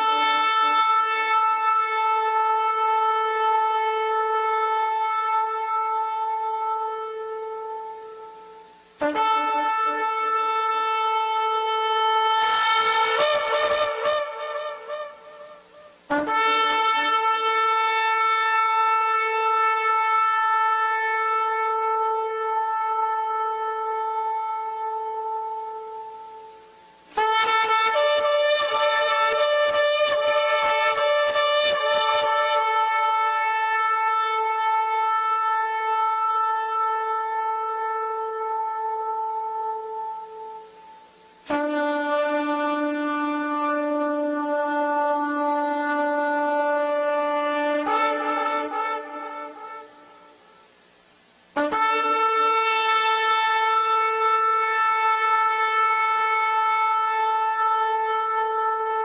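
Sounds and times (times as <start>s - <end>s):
shofar long blast: 0.0s - 59.0s.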